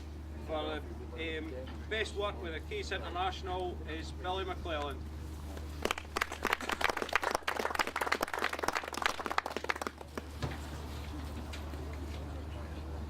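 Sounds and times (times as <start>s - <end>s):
small crowd clapping: 5.6s - 10.4s.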